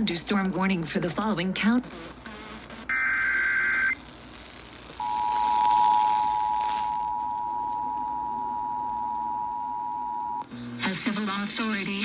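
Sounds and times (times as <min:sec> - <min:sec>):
shrill digital header burst: 0:02.9 - 0:07.2.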